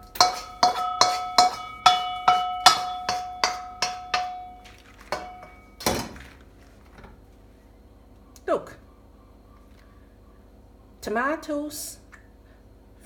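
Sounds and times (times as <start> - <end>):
metal spatula tapping a pan: 0.0 - 5.8.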